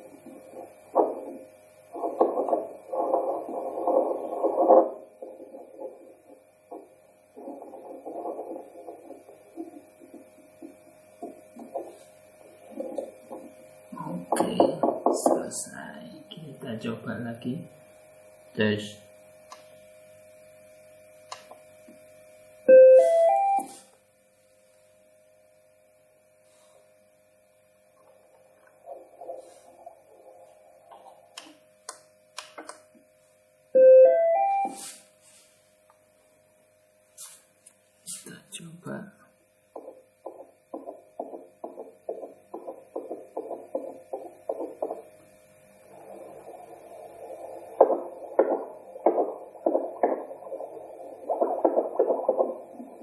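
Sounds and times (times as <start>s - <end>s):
faint steady electronic tone: 0.0s - 53.0s
soft hiss: 34.5s - 40.7s.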